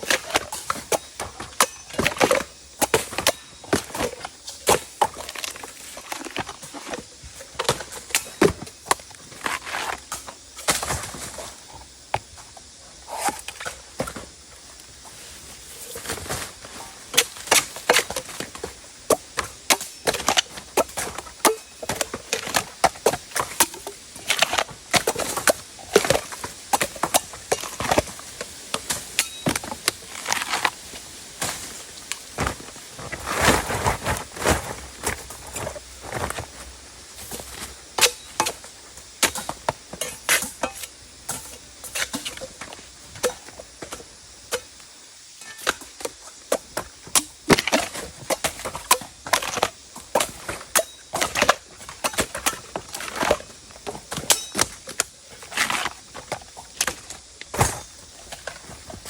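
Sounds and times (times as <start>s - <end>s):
blade chopping bamboo: 17.1s - 28.1s.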